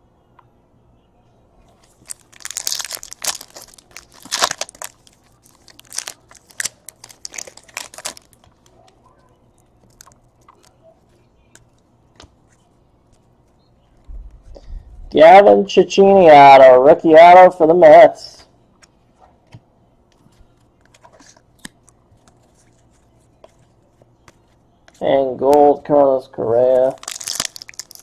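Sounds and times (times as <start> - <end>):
foil wrapper crinkling and tearing: 1.8 - 8.8, 9.8 - 10.7, 26.8 - 28.0.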